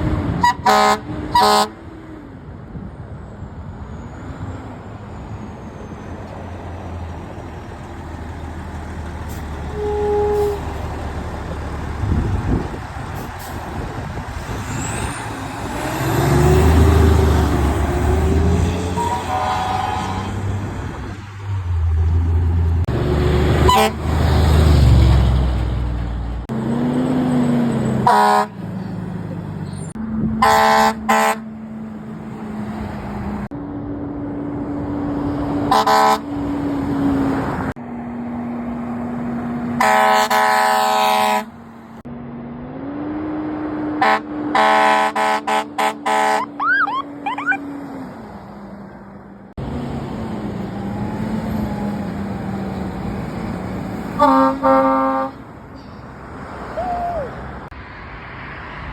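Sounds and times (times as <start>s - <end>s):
fire truck air horn blasts: 0.4s - 1.8s, 9.3s - 11.0s, 18.0s - 20.4s, 23.6s - 24.2s, 28.0s - 28.7s, 30.4s - 31.6s, 35.7s - 36.4s, 39.8s - 41.6s, 44.0s - 47.6s, 54.1s - 55.5s.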